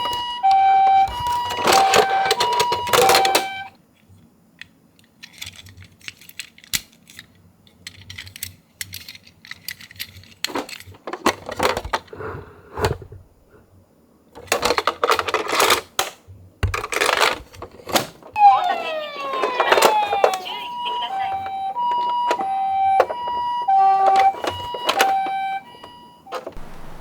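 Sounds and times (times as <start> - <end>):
toy siren two-tone: 0.0 - 3.7, 18.4 - 26.5.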